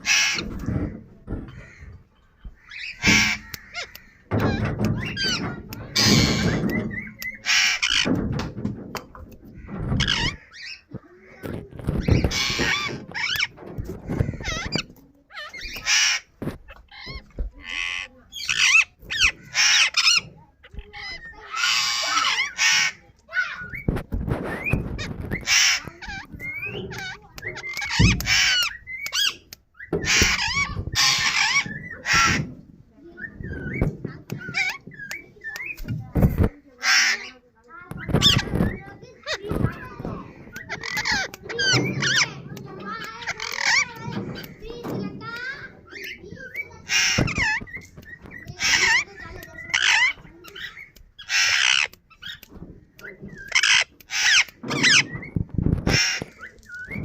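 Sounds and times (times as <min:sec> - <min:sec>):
parrot screeching: 0:00.0 - 0:00.5, 0:02.6 - 0:08.1, 0:09.6 - 0:10.9, 0:11.9 - 0:23.9, 0:24.9 - 0:32.5, 0:34.4 - 0:35.7, 0:36.8 - 0:37.3, 0:40.3 - 0:42.3, 0:42.9 - 0:44.6, 0:45.3 - 0:52.4, 0:53.4 - 0:57.0
parakeet squawking: 0:00.0 - 0:00.7, 0:01.5 - 0:08.3, 0:09.5 - 0:32.6, 0:33.2 - 0:36.1, 0:36.7 - 0:57.0.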